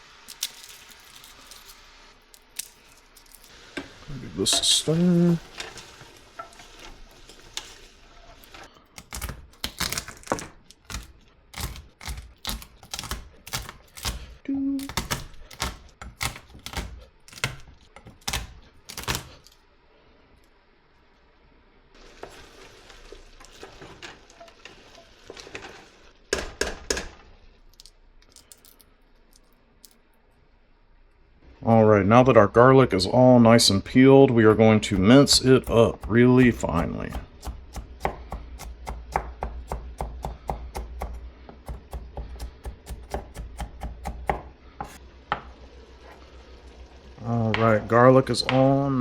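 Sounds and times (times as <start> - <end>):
garlic cloves knocking and clacking: 34.9 - 45.0.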